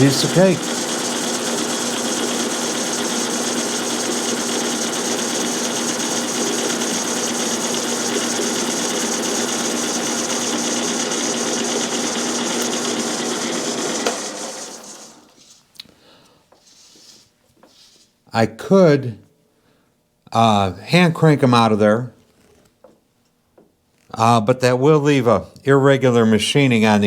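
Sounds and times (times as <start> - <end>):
metal lathe running: 0.0 - 15.4.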